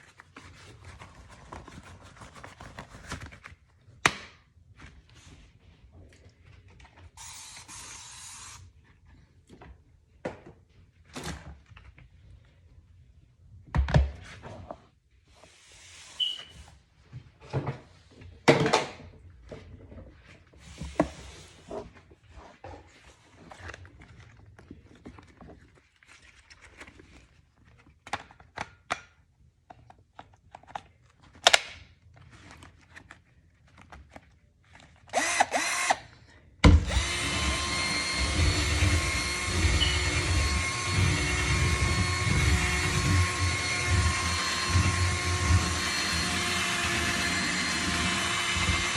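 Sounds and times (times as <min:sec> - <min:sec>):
short hissing bursts: 0:07.2 - 0:08.6
small electric motor whining: 0:36.8 - 0:48.9.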